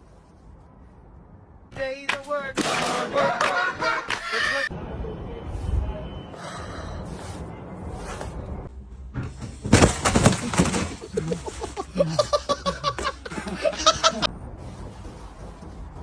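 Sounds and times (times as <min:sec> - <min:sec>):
person laughing: 0:03.2 - 0:04.7, 0:10.9 - 0:14.3.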